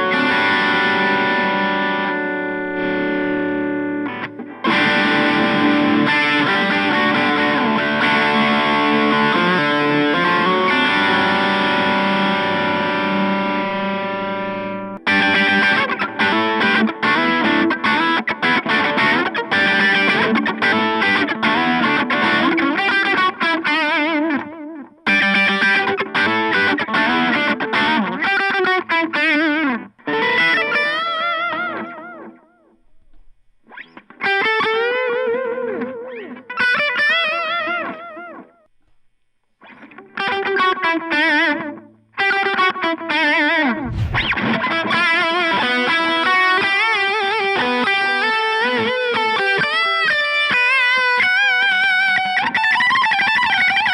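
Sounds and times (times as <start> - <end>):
electric guitar lead phrases: 0.0 - 22.5
low thump: 43.8 - 44.5.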